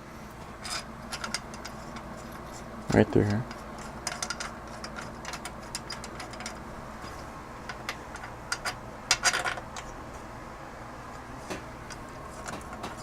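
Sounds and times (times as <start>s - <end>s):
metal bicycle parts clicking: 0.6s - 2.6s, 3.2s - 9.9s.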